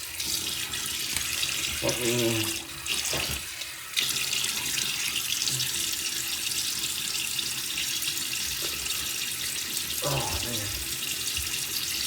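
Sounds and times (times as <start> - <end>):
sink tap running: 0.0 - 12.0.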